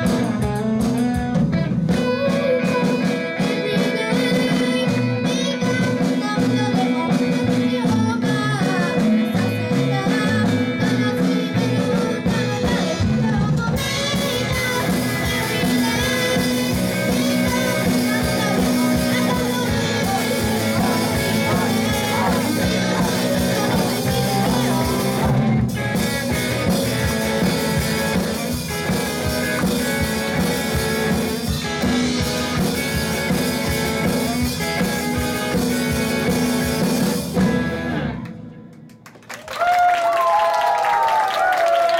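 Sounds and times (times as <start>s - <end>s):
live rock band playing: 0.0s - 39.8s
person singing: 1.9s - 28.2s.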